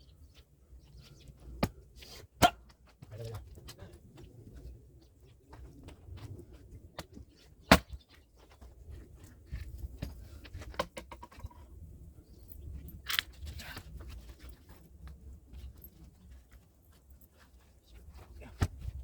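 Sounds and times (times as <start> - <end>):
axe striking log: 7.7 - 8.0.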